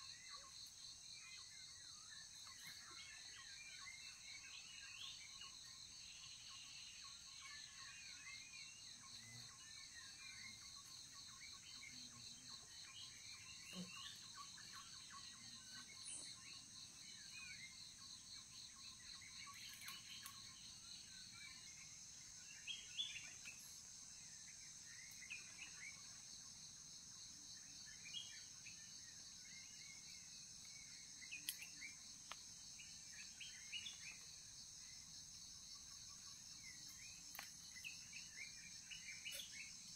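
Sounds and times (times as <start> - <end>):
insects chirring: 0.0 - 39.9
bird chirps: 2.2 - 23.9, 27.6 - 35.1, 35.7 - 39.9
faint clicks: 31.4 - 32.4.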